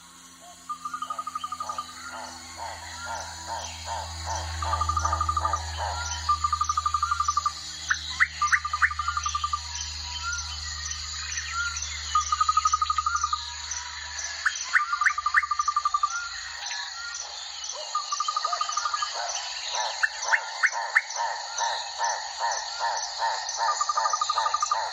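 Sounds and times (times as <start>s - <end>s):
low hum: 0.0s - 13.1s
insect chirping: 0.0s - 24.9s
bird trilling and chirping: 0.5s - 13.4s.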